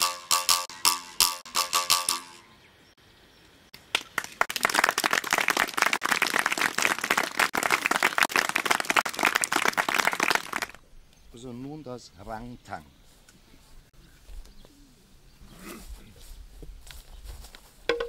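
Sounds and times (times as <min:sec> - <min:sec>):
bamboo instrument note: 0:00.0 - 0:02.5.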